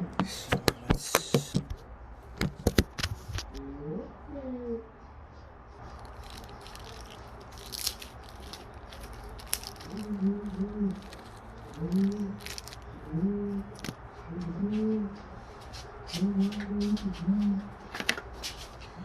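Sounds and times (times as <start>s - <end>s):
low wavering hums: 5.7s - 15.4s
plastic bag crinkling: 5.9s - 13.0s, 13.7s - 14.0s.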